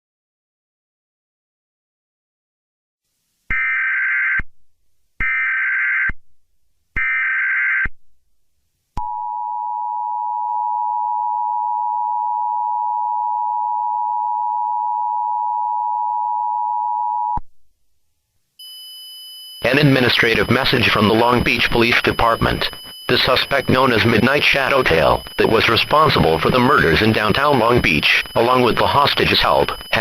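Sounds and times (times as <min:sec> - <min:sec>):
two-tone attention signal: 0:18.6 - 0:30.0
screeching digital data tones: 0:19.6 - 0:30.0.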